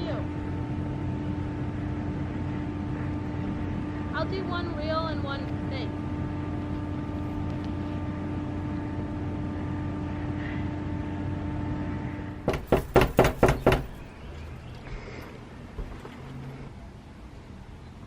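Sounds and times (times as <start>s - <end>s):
hum with held tone: 0.0s - 15.0s
loud sharp sounds: 12.5s - 14.0s.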